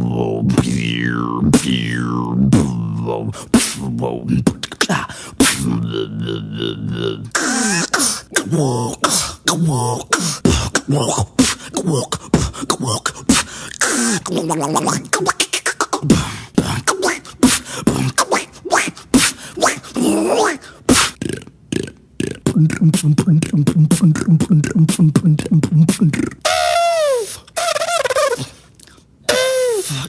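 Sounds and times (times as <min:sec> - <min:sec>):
beatboxing clicks and pops: 0:04.4 - 0:05.7, 0:10.4 - 0:20.0, 0:20.9 - 0:26.6, 0:27.5 - 0:29.5.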